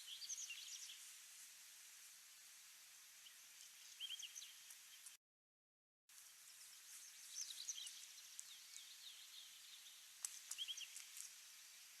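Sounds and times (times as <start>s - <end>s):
small birds chirping: 0.0s - 1.2s, 3.2s - 5.2s, 6.1s - 12.0s.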